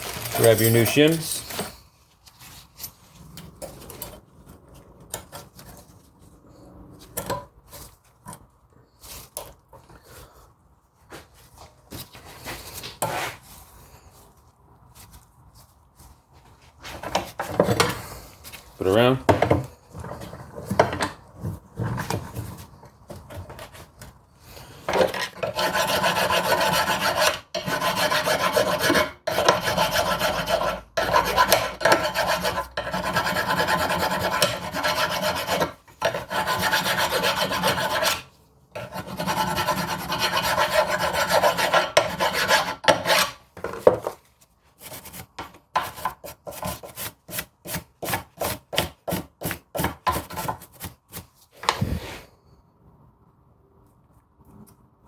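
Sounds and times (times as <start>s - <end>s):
hand tool scraping metal: 24.9s - 43.4s.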